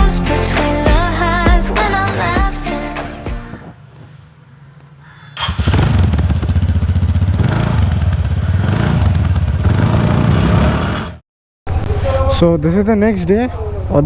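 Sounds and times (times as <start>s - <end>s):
motorcycle engine running: 5.4s - 11.2s.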